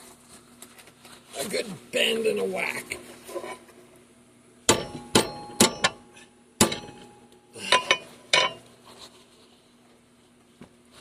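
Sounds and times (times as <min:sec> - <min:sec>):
hammer striking hot steel: 0:04.7 - 0:08.6.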